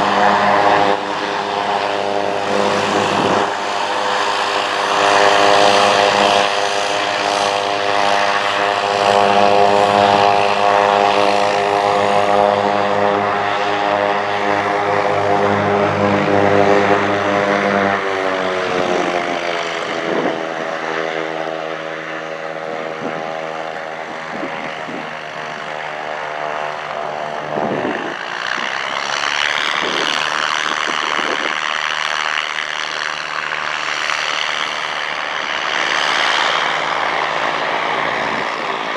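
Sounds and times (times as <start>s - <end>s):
airplane engine and propeller: 0.0s - 38.9s.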